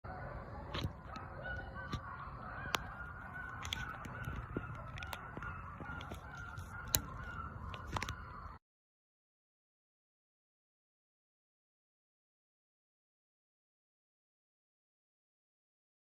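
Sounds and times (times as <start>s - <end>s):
coyotes howling and yipping: 0.0s - 8.6s
sharp clicks: 0.7s - 8.6s.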